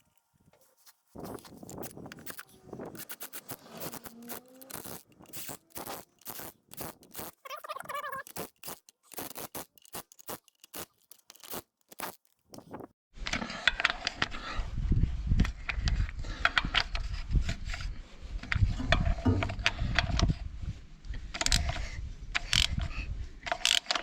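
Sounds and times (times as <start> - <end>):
metal parts and tools clinking: 1.2 - 12.7
wavering squeak: 2.1 - 8.5.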